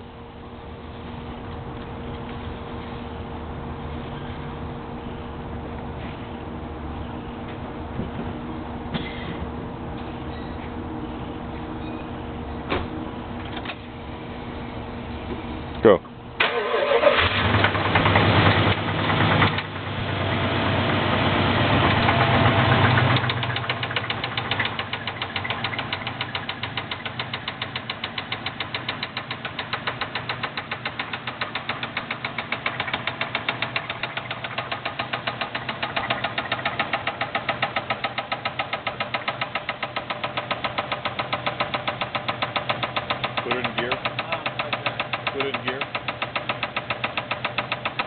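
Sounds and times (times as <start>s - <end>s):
car engine revving and idling: 17.1s - 48.0s
engine knocking: 21.8s - 48.0s.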